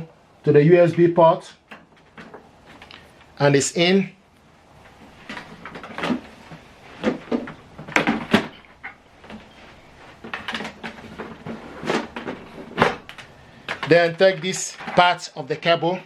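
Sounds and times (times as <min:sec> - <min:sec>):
cable handling knocks and clicks: 0:04.8 - 0:15.1.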